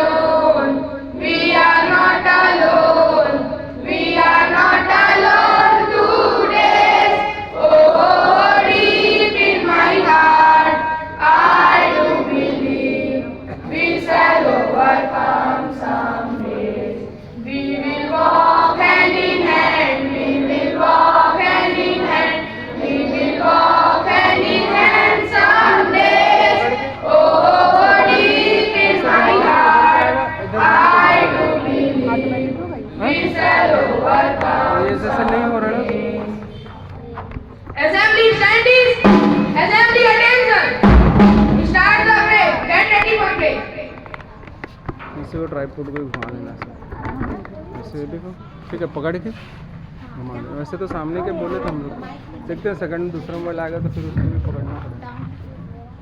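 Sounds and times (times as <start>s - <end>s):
children singing in unison: 0.0s - 36.6s.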